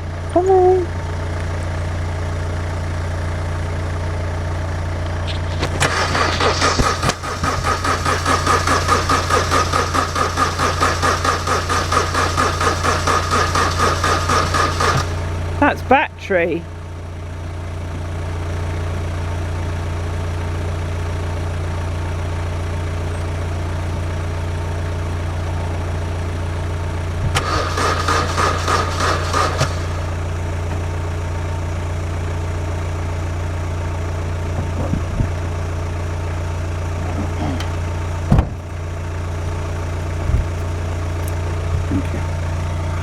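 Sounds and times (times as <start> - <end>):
car starter rapid clicking: 5.6 - 15.5, 27.3 - 30.8, 37.6 - 41.7
steady low hum: 36.3 - 43.0
single thump: 38.3 - 38.6.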